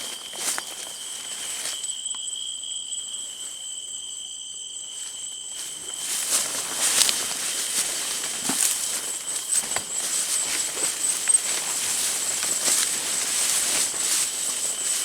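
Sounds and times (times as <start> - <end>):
footsteps rustling through leaves: 0.0 - 1.9, 5.0 - 15.0
night insects singing: 0.0 - 15.0.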